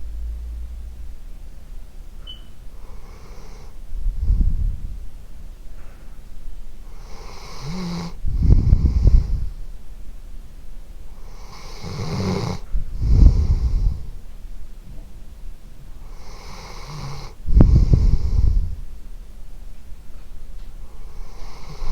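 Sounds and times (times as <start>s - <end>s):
dog snoring: 2.7s - 4.9s, 6.9s - 9.6s, 11.2s - 14.2s, 16.0s - 18.9s, 21.0s - 21.9s.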